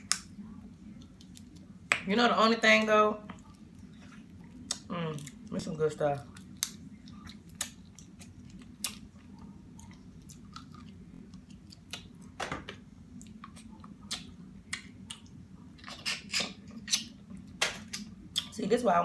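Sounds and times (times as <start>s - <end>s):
steady low hum: 0.0s - 19.0s
person chewing food: 6.1s - 12.4s.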